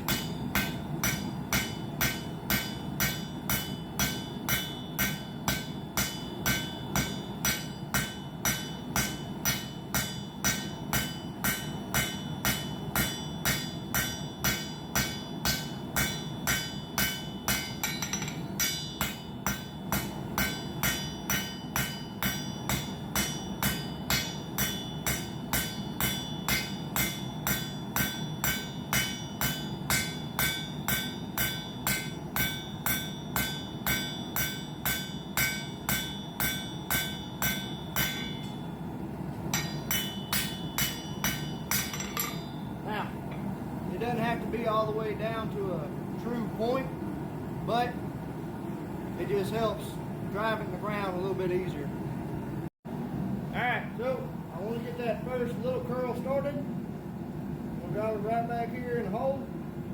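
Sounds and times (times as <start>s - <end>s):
hammer ringing on anvil: 0.0s - 38.8s, 39.4s - 43.5s.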